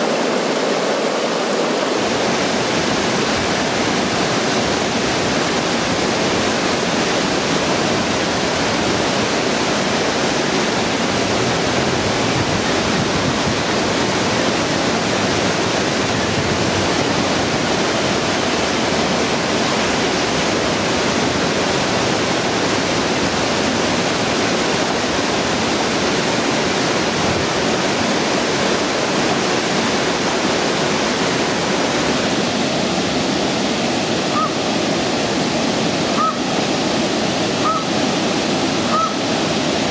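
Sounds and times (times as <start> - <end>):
water rushing over dam: 0.0 - 39.9.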